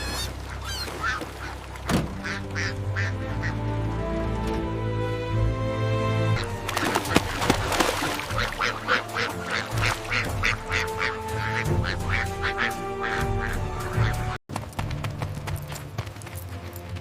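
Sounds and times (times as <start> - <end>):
ducks quacking: 0.0 - 4.1, 6.4 - 14.4
background music: 1.9 - 17.0.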